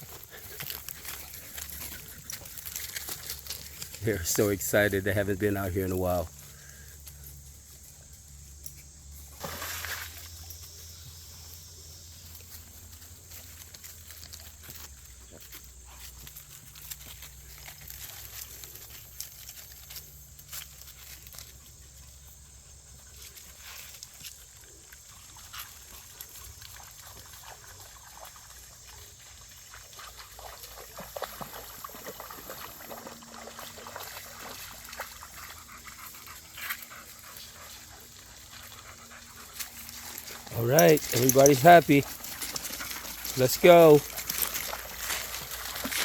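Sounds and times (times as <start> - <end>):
small dogs moving about: 0.0 - 6.3, 30.1 - 46.0.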